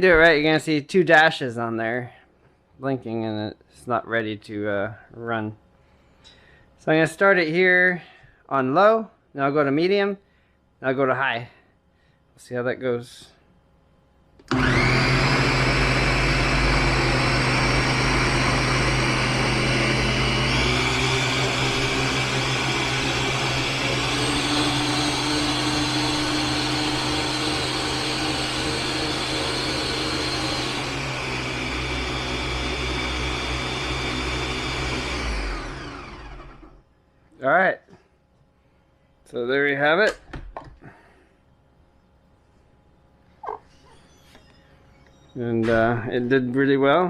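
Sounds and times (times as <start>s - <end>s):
blender motor running: 14.5s - 36.8s.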